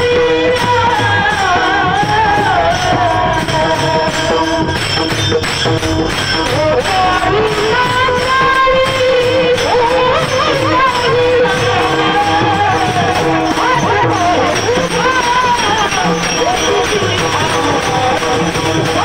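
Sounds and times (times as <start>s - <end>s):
small hand cymbals beating: 0.0s - 19.0s.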